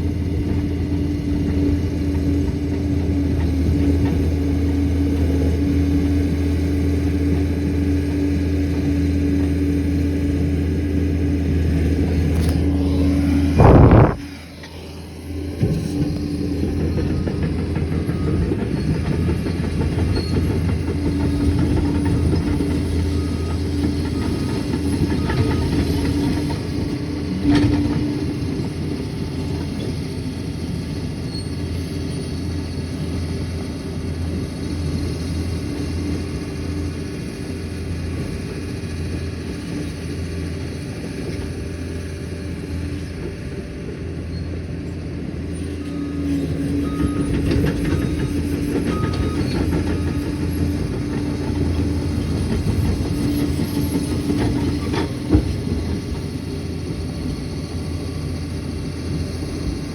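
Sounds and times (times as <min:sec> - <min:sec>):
diesel engine running: 0:00.0 - 0:59.9
steel tracks clattering: 0:11.6 - 0:36.5, 0:37.9 - 0:59.9.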